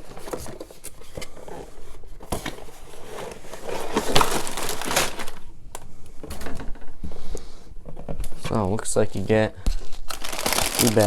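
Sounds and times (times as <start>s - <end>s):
cardboard and plastic crinkling: 0.0s - 5.5s, 9.7s - 11.0s.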